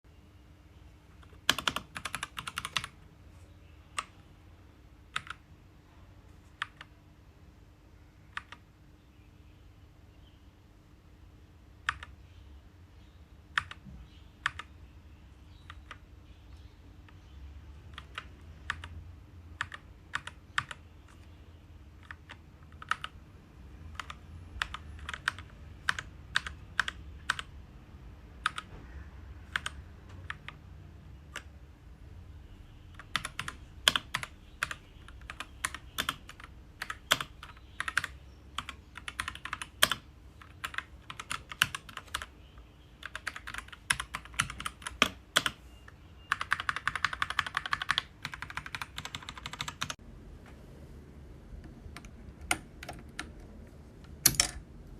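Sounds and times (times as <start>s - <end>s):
mechanical keyboard typing: 1.2s - 3.0s, 5.1s - 5.4s, 6.6s - 6.9s, 8.3s - 8.6s, 11.8s - 12.2s, 13.5s - 14.7s, 15.6s - 16.0s, 17.9s - 19.0s, 19.6s - 21.3s, 22.0s - 23.2s, 23.9s - 27.5s, 28.4s - 28.7s, 29.5s - 30.6s, 32.9s - 42.3s, 43.0s - 45.6s, 46.3s - 50.0s, 51.6s - 54.7s.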